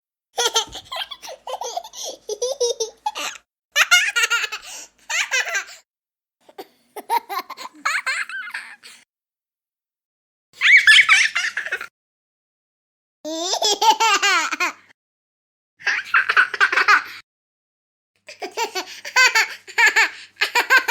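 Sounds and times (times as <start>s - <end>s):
young child laughing: 0.4s - 5.8s, 6.5s - 9.0s, 10.6s - 11.9s, 15.8s - 17.2s, 18.3s - 20.9s.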